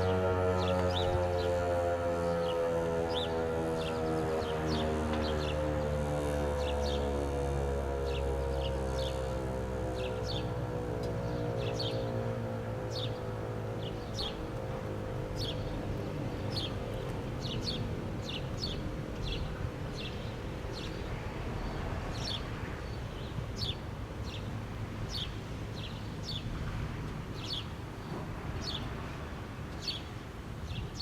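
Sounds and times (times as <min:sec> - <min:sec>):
warning siren winding down: 0:00.0 - 0:22.0
bird chirping: 0:09.9 - 0:24.5.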